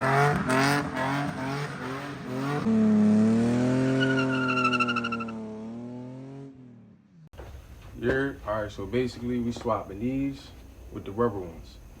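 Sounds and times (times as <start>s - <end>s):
car engine revving hard: 0.0s - 6.6s
tyre squeal: 3.8s - 5.4s.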